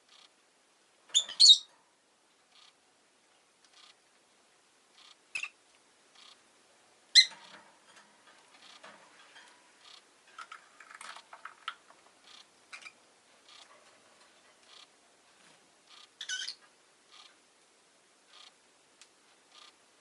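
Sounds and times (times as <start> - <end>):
bird chirping: 0.1 - 0.3, 1.1 - 1.8, 2.5 - 2.8, 3.7 - 4.0, 5.0 - 6.4, 7.1 - 7.6, 8.3 - 8.9, 9.8 - 13.8, 14.6 - 14.9, 15.9 - 17.4, 18.3 - 18.6, 19.5 - 19.8.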